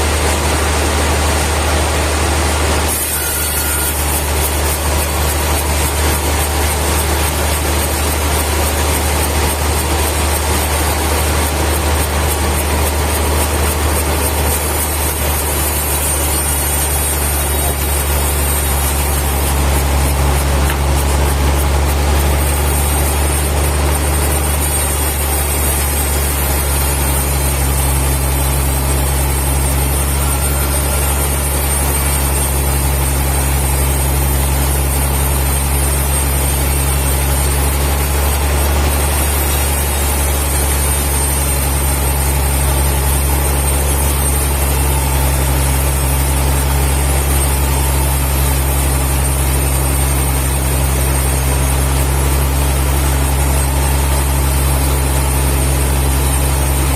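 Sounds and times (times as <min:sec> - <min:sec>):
heavy machinery humming: 0:00.0 - 0:56.9.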